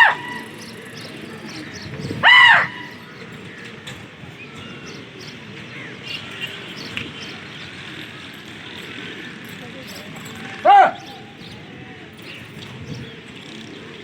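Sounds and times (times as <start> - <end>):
loud bird call: 0.0 - 3.7, 10.5 - 11.8
small birds chirping: 0.0 - 14.0.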